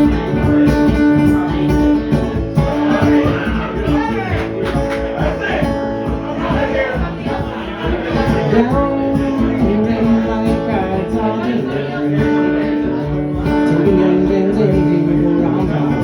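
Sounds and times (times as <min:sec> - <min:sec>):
strummed guitar: 0:00.0 - 0:16.0.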